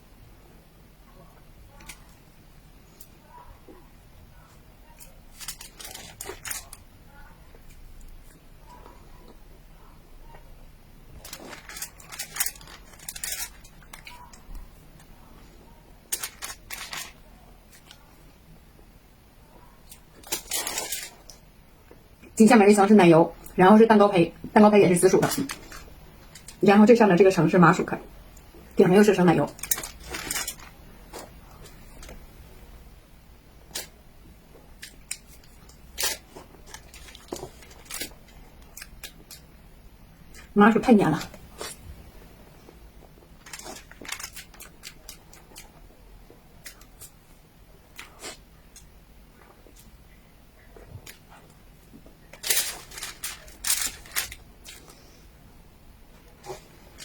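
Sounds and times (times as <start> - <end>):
crisp clicking handling noises: 5.0 - 6.8, 11.2 - 15.2, 16.1 - 18.0, 19.8 - 21.4, 25.2 - 26.6, 29.5 - 32.2, 34.7 - 39.5, 43.4 - 45.8, 50.7 - 55.0.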